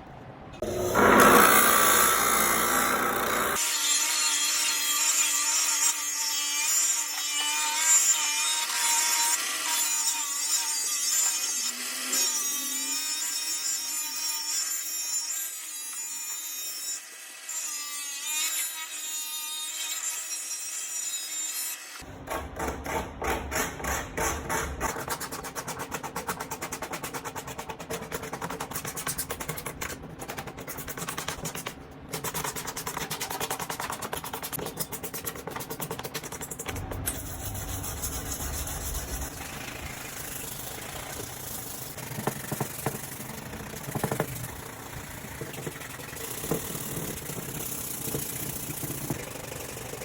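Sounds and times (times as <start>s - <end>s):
power tool cutting: 0.6s - 22.1s.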